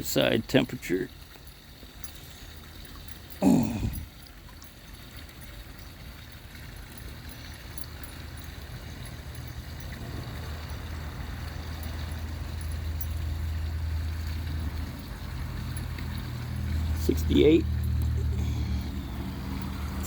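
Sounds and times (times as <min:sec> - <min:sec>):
low mechanical engine drone: 0:08.3 - 0:20.0.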